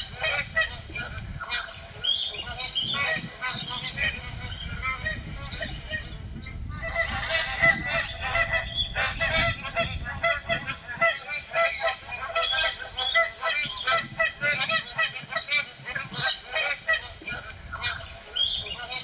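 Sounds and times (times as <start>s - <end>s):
geese honking: 6.8s - 17.2s.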